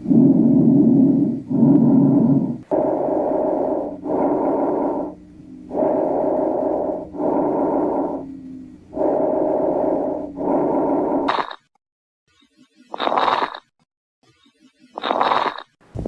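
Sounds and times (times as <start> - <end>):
lung breath sounds: 0.0 - 11.6.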